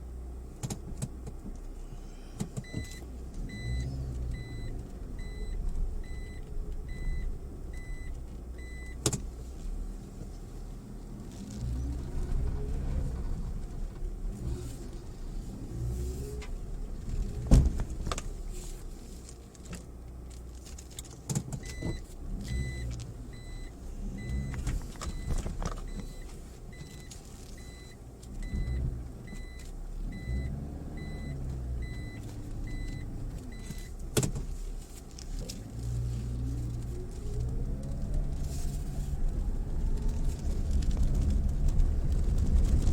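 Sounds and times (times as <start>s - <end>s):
vehicle engine at low speed: 0.0s - 42.9s
vehicle body knocks and clunks: 17.0s - 18.4s, 24.2s - 26.2s
reverse warning beeper: 21.6s - 33.9s.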